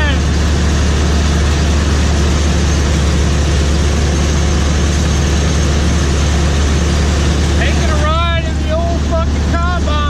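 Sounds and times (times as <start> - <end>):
combine harvester engine drone: 0.0 - 10.0
machinery noise: 0.0 - 10.0.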